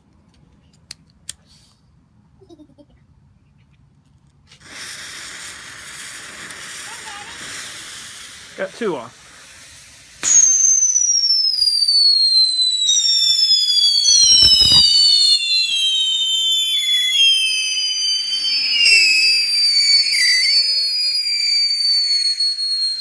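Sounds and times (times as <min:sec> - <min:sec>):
shrill whistling fireworks: 0:04.6 - 0:23.0.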